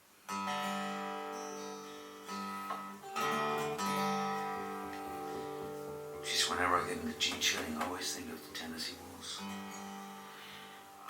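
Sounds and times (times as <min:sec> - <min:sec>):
acoustic guitar chords strummed: 0:00.3 - 0:11.0.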